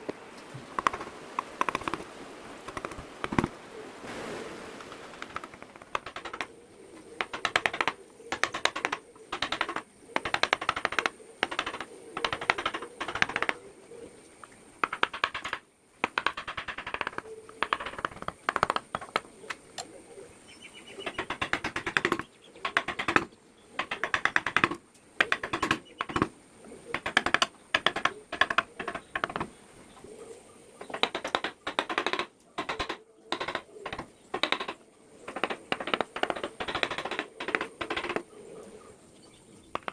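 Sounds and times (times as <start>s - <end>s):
carving tools tapping wood: 0.7s - 2.0s, 2.7s - 3.5s, 5.2s - 6.5s, 7.2s - 13.6s, 14.8s - 19.3s, 21.0s - 26.3s, 26.9s - 29.5s, 30.8s - 38.2s.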